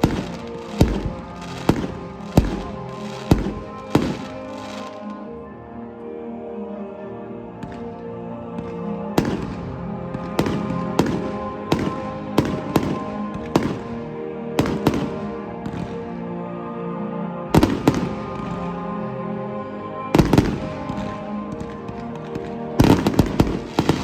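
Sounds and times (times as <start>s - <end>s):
fireworks bangs: 0.0s - 5.2s, 8.6s - 14.0s, 14.6s - 16.0s, 20.2s - 24.0s
background music: 0.0s - 24.0s.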